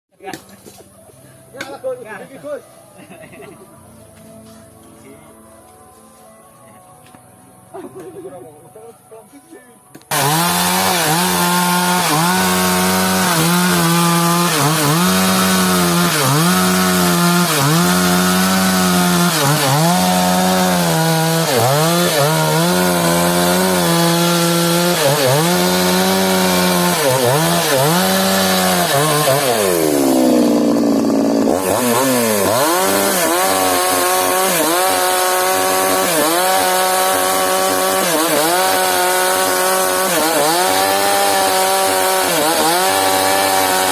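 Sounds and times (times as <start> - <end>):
chainsaw cutting wood: 10.0 - 43.9.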